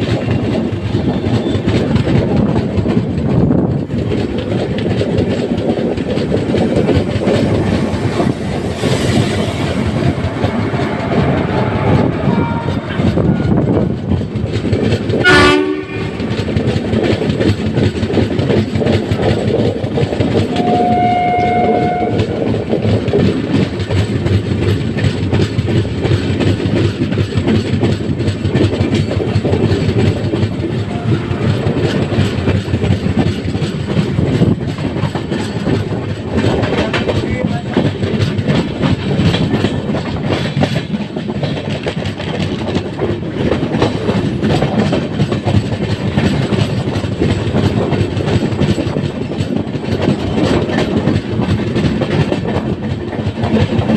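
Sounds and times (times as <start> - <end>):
train wheels rumbling on rails: 0.0 - 53.9
train horn blast: 9.6 - 14.1, 15.2 - 16.4, 20.4 - 22.6, 30.6 - 32.6.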